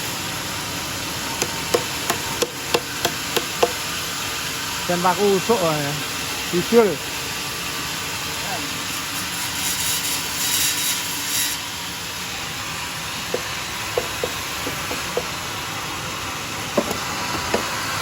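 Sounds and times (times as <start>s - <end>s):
sawmill blade cutting log: 0.9s - 4.2s, 8.7s - 15.8s, 16.6s - 18.0s.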